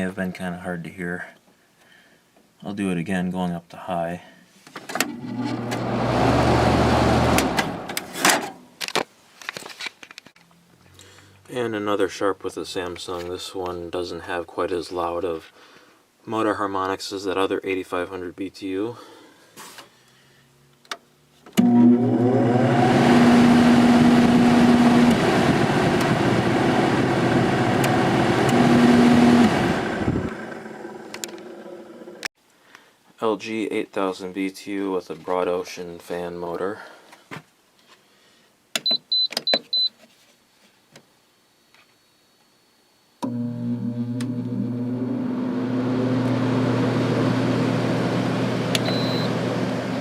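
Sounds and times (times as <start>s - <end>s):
fan motor humming: 5.1s - 8.0s, 21.6s - 32.3s, 43.2s - 50.0s
blower air rushing: 22.2s - 32.2s.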